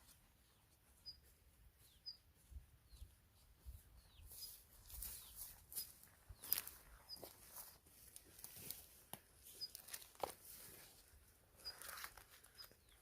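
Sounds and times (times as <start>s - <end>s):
faint bird chirps: 0.5s - 2.3s.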